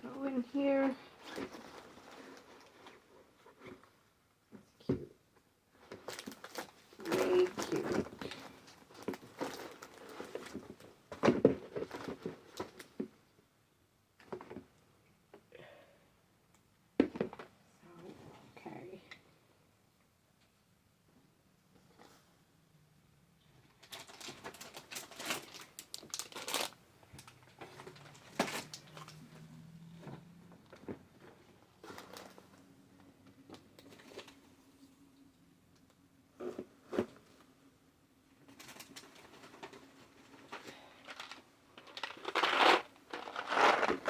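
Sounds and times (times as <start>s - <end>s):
plastic packaging rustling: 5.8s - 13.0s, 23.7s - 32.7s, 38.5s - 44.0s
packaging crinkling: 23.8s - 29.4s, 40.4s - 44.0s.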